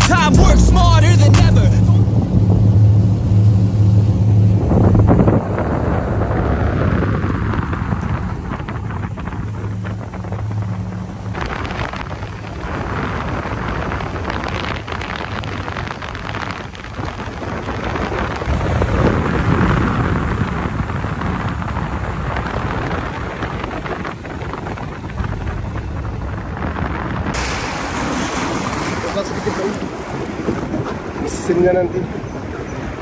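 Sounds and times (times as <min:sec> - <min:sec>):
music with steady bass: 0:00.0 - 0:05.0
wind buffeting microphone: 0:00.1 - 0:33.0.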